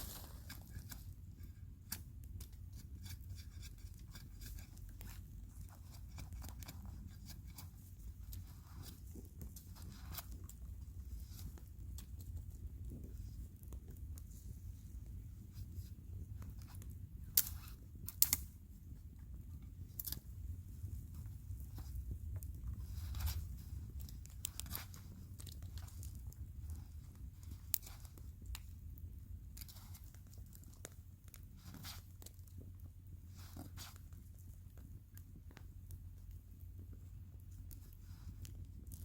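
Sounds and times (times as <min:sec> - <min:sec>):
firewood crackling and snapping: 0:00.0 - 0:03.2, 0:16.3 - 0:36.6, 0:37.4 - 0:39.0
low steady rumble: 0:00.0 - 0:39.0.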